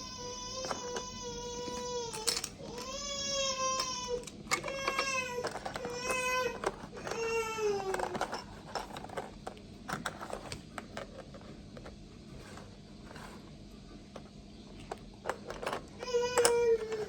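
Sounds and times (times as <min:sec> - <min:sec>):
clicks of toys being handled: 0:01.7 - 0:12.6, 0:14.8 - 0:17.0.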